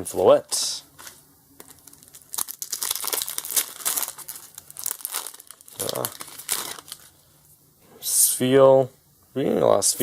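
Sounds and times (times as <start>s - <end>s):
foil wrapper crinkling and tearing: 1.0s - 7.2s.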